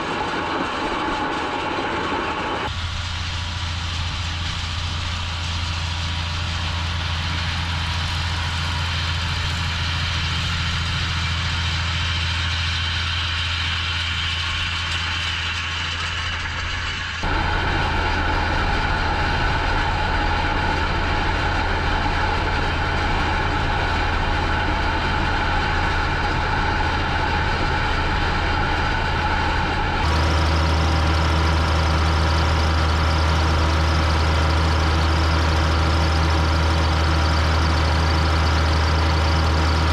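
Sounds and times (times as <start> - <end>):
tractor diesel engine under load: 2.6 - 27.3, 30.0 - 39.9.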